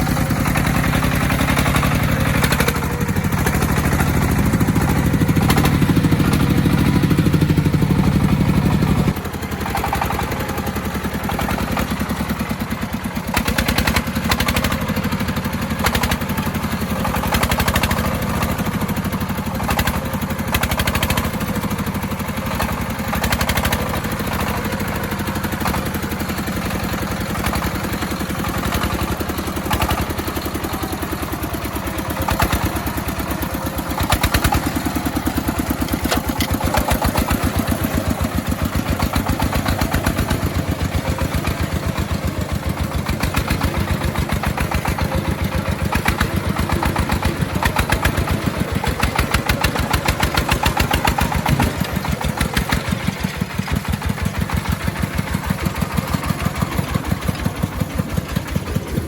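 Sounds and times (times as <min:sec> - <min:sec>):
vehicle engine running: 0:00.0 - 0:59.0
knocks and clatter: 0:31.6 - 0:59.0.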